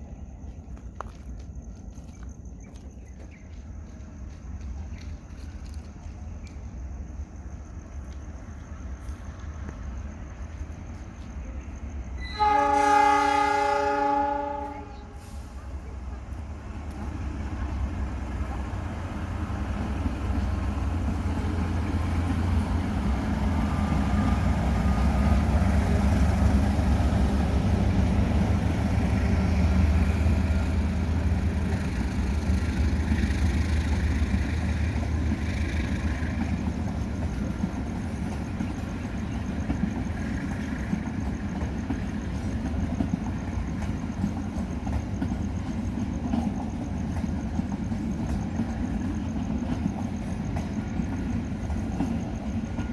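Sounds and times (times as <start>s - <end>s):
train wheels rumbling on rails: 0.0s - 52.9s
train horn blast: 12.2s - 15.7s.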